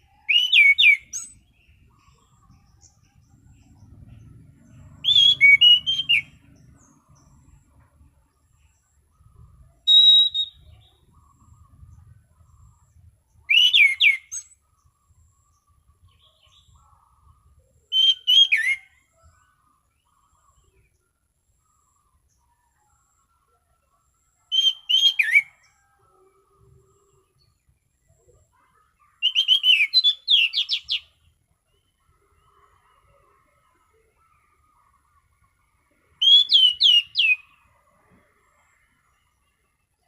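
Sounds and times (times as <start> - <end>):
thrush singing whistled notes: 0.0 - 7.8, 8.5 - 20.8, 24.4 - 25.9, 29.2 - 39.5.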